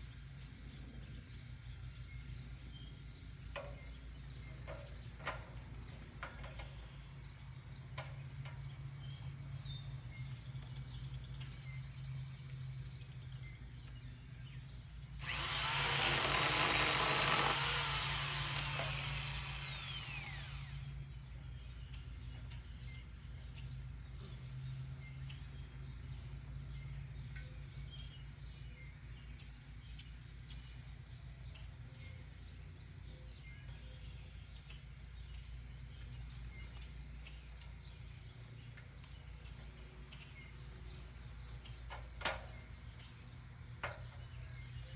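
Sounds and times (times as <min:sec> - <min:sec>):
power saw whining: 0:15.2 - 0:21.0.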